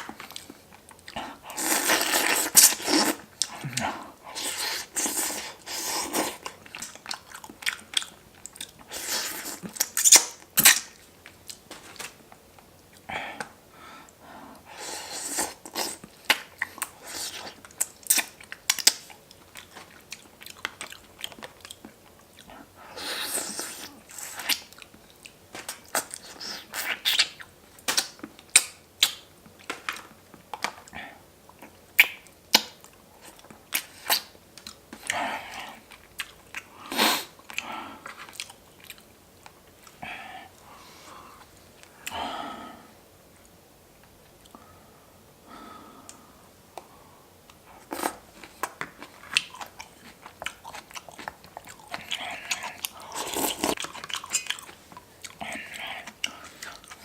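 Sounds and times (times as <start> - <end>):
close chewing and crunching: 0.0 - 40.0, 47.4 - 57.0.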